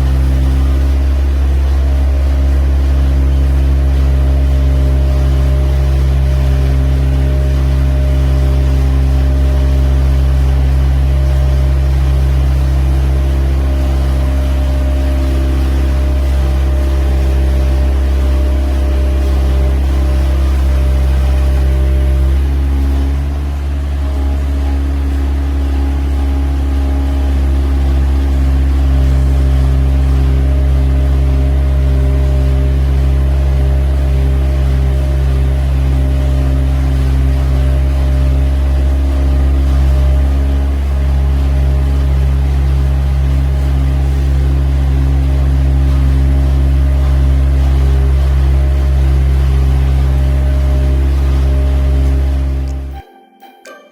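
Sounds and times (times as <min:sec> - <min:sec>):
machine humming: 0:00.0 - 0:34.6.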